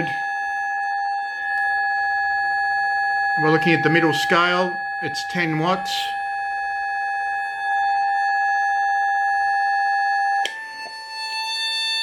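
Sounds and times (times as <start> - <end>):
buzzy electronic tone: 3.3 - 8.8.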